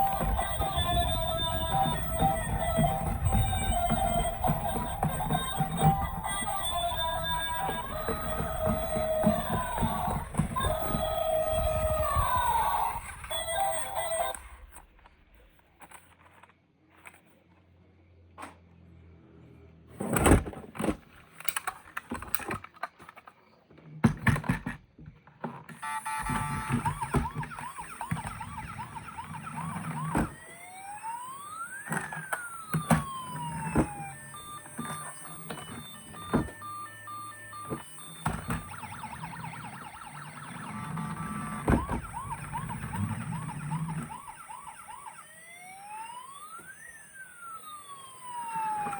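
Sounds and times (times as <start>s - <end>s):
toy electronic siren: 0.0s - 15.5s, 25.7s - 48.9s.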